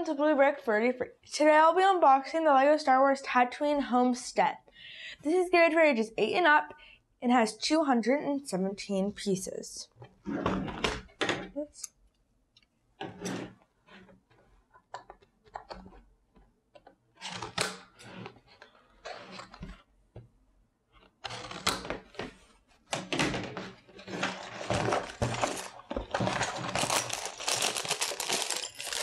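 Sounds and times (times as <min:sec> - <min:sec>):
plastic bags rustling: 0:24.3 - 0:29.0.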